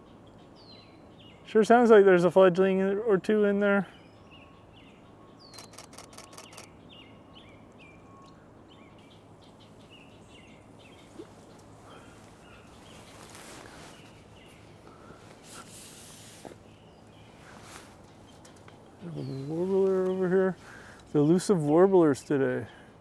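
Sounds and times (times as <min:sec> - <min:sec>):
bird chirps: 0:03.9 - 0:15.4, 0:16.6 - 0:21.0
camera shutter clicks: 0:05.5 - 0:06.7.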